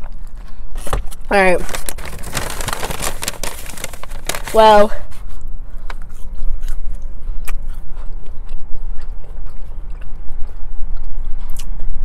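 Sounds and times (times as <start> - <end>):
low rumble: 1.6 - 12.0
chewing wet mouth sounds: 5.9 - 12.0.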